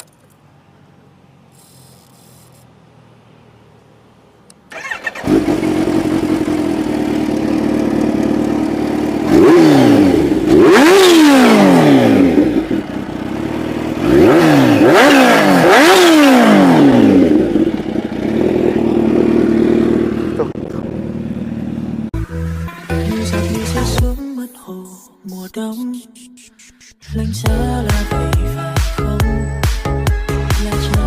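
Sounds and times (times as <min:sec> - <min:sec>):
vehicle engine starting and idling: 0:00.0 - 0:24.2
engine revving: 0:04.7 - 0:24.0.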